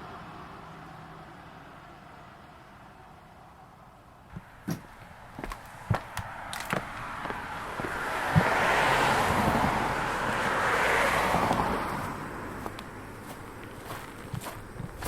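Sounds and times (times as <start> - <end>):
car passing: 4.3 - 15.0.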